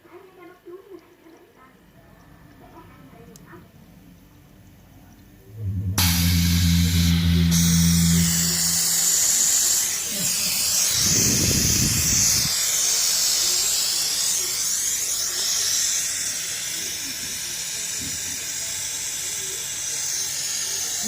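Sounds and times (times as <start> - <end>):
short low rumble: 5.4 - 10.1
compressed air hissing: 5.6 - 21.0.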